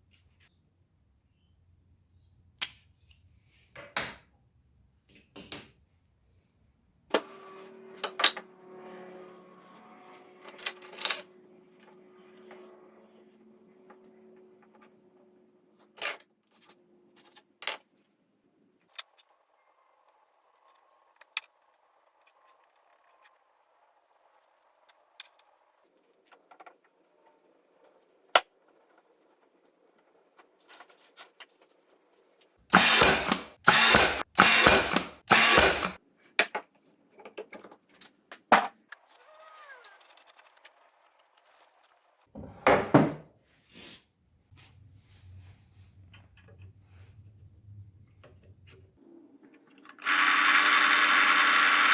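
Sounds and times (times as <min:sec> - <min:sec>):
loud noisy tool bursts: 0:32.7 - 0:36.0, 0:50.0 - 0:51.9
tools clicking and knocking: 0:32.7 - 0:36.6.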